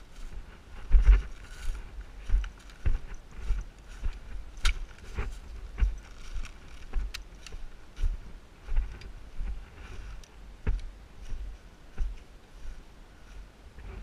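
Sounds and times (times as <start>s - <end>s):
walking footsteps: 0.0s - 14.0s
gear clicking and rattling: 1.0s - 7.8s.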